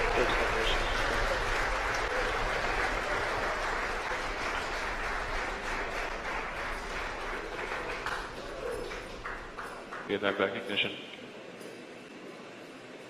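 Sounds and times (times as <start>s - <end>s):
crowd applauding: 0.0s - 10.4s.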